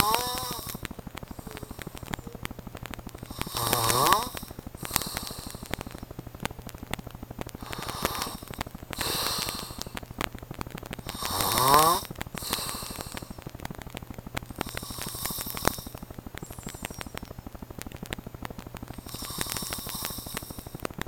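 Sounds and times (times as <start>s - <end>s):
man snoring loudly: 0.0s - 2.0s, 3.3s - 5.9s, 7.6s - 10.0s, 11.0s - 13.2s, 14.6s - 15.8s, 19.0s - 20.6s.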